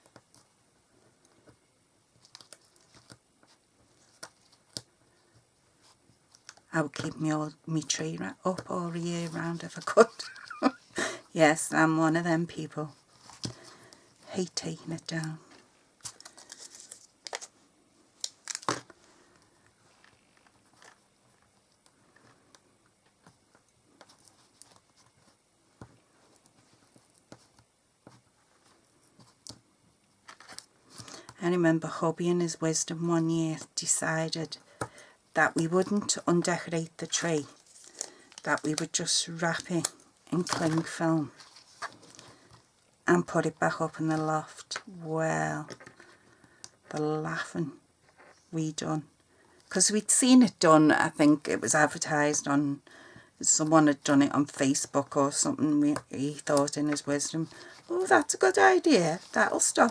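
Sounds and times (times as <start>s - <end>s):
light clicks and crinkles: 0.0s - 10.8s, 12.6s - 31.4s, 32.8s - 44.9s
rustling of card and craft materials: 0.0s - 48.9s, 49.5s - 59.9s.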